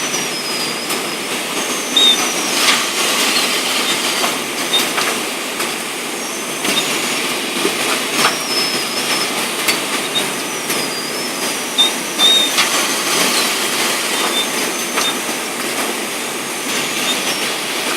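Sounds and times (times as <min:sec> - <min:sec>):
bagging machine running: 0:00.0 - 0:17.9
short high squeals: 0:00.0 - 0:17.9.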